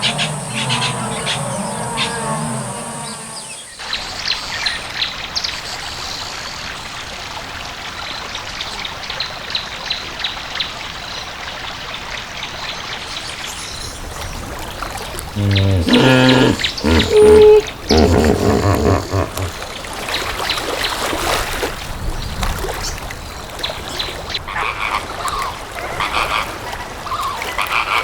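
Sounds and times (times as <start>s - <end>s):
birds chirping: 0.0s - 3.8s, 15.2s - 19.6s.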